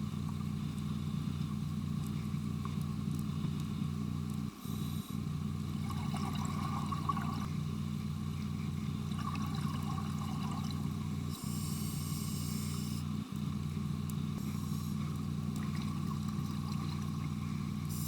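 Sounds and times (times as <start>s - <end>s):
low underwater hum: 0.0s - 18.0s
exhaled bubbles fizzing: 5.7s - 7.5s, 9.0s - 11.3s, 15.5s - 17.9s.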